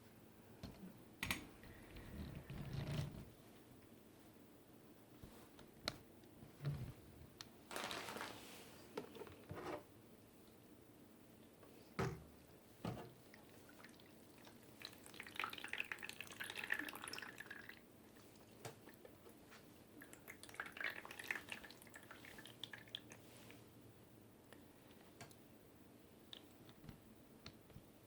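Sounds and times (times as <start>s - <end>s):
water dripping: 13.3s - 17.8s, 20.0s - 23.2s.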